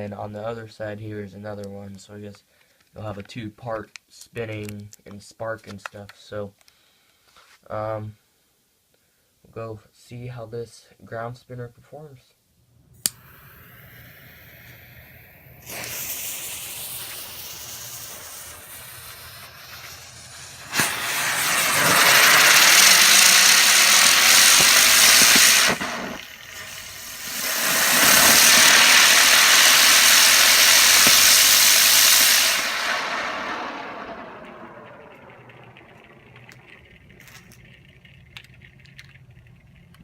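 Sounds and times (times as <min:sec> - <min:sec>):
firework spinner hissing: 0:13.0 - 0:37.7
firework pop: 0:13.0 - 0:39.1.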